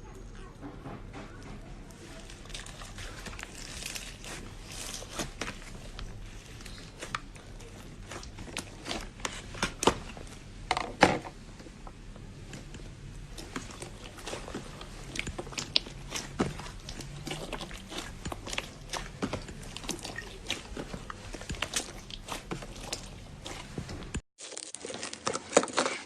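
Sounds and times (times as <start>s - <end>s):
slime squished by hand: 2.0s - 10.5s, 12.4s - 26.0s.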